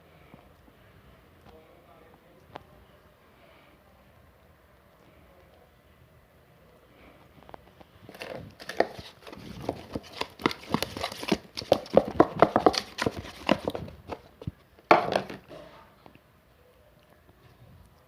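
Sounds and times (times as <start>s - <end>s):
slime squishing by hand: 7.2s - 15.7s.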